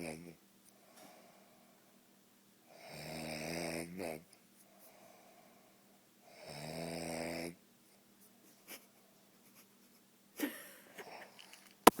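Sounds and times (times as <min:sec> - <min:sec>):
man snoring: 0:02.7 - 0:04.2, 0:06.3 - 0:07.6.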